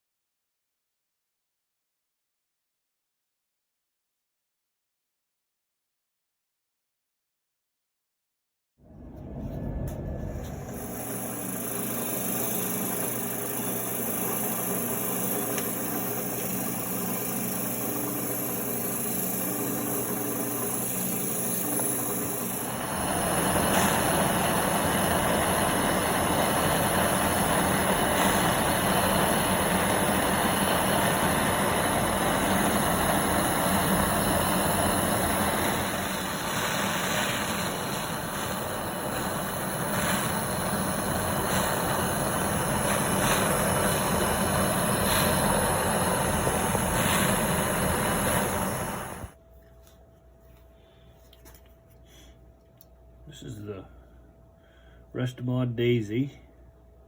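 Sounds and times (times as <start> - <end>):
motor running: 9.6 - 49.4.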